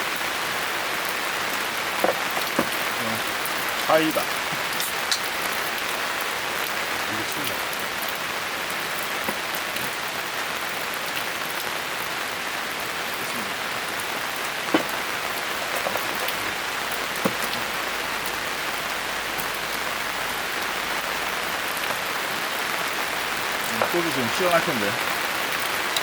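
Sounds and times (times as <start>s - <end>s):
steady rain: 0.0s - 26.0s
sharp knocks: 14.7s - 15.1s.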